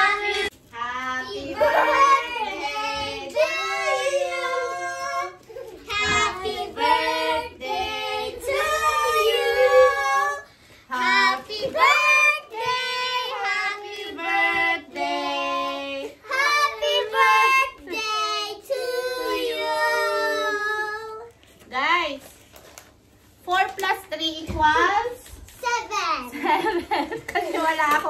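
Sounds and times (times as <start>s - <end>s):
child singing: 0.0s - 21.3s.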